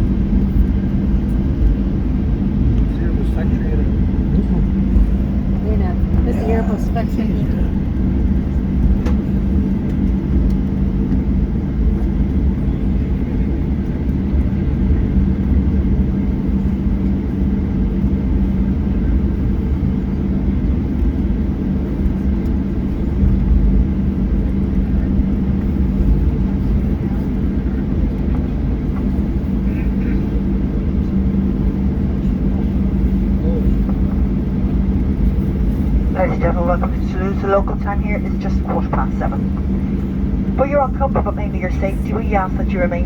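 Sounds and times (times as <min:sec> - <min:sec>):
airplane cabin engine rumble: 0:00.0 - 0:43.0.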